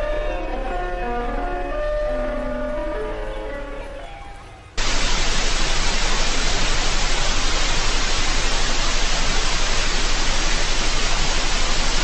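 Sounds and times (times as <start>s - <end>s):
electronic static hiss: 4.8s - 12.0s.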